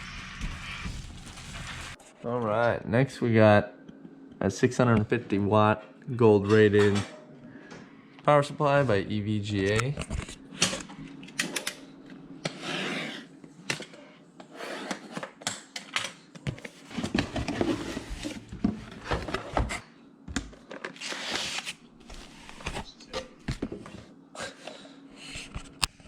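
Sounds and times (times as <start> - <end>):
cardboard packaging rustling: 0.2 - 2.0.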